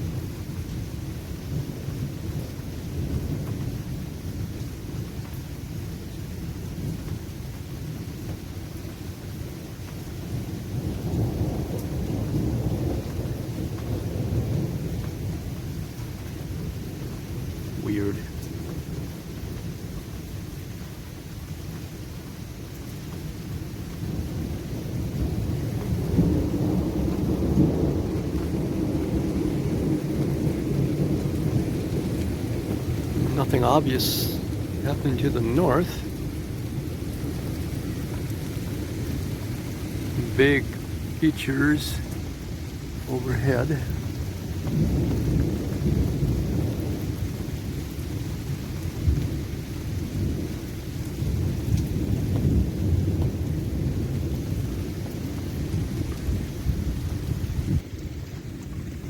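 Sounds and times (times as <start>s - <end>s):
thunderstorm roar: 10.3s - 15.8s, 24.0s - 59.0s.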